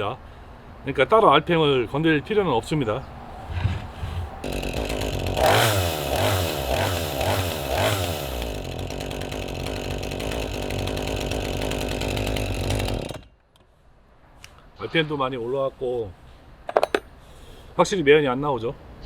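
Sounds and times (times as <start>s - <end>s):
chainsaw engine revving: 3.5s - 13.3s.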